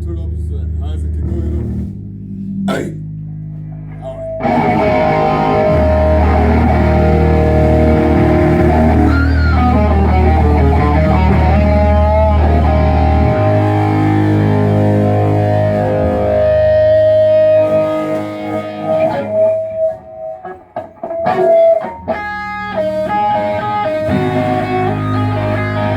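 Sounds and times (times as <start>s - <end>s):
bass guitar: 0.0s - 25.9s
electric guitar through amplifier: 0.0s - 25.9s.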